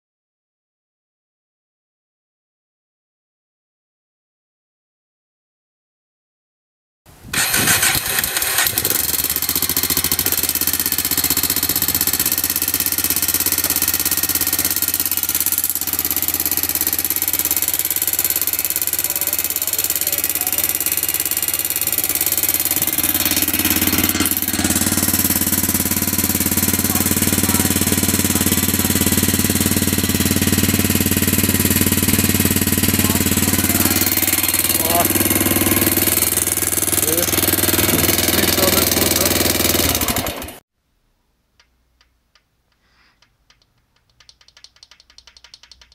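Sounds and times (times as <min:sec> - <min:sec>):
metallic engine clatter: 0:07.4 - 0:40.6
motorcycle engine idling: 0:07.4 - 0:40.6.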